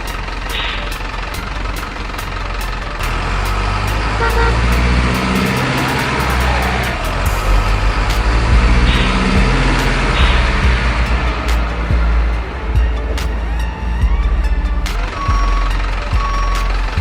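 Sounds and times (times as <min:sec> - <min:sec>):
horn toot: 0:00.0 - 0:17.0
toy truck engine rumble: 0:00.0 - 0:17.0.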